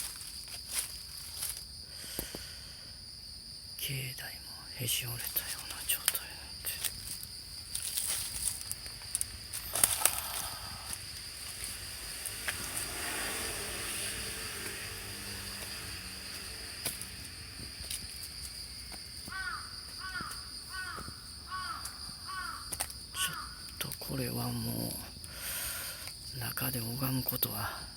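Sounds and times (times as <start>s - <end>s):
high-pitched drone: 8.1s - 20.0s
crow cawing: 19.1s - 23.6s.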